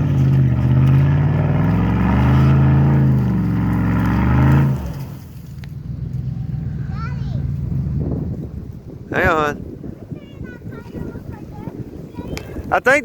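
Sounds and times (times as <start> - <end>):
pickup truck engine revving: 0.0 - 9.1.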